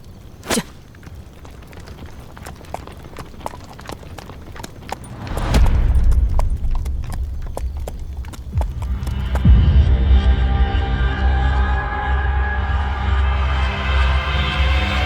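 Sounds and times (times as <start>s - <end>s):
horse hooves galloping: 0.0s - 9.8s
low rumble: 5.1s - 15.0s.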